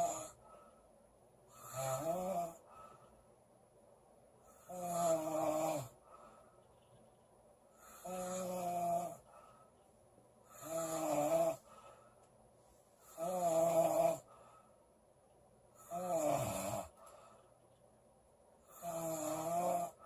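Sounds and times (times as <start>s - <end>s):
woman snoring loudly: 0.0s - 0.4s, 1.5s - 2.6s, 4.6s - 6.0s, 7.8s - 9.2s, 10.5s - 11.6s, 13.1s - 14.3s, 15.8s - 17.0s, 18.7s - 20.0s.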